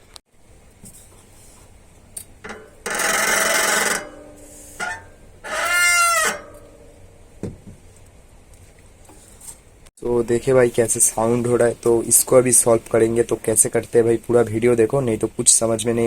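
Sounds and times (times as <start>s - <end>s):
disc brake squealing: 2.5s - 6.8s.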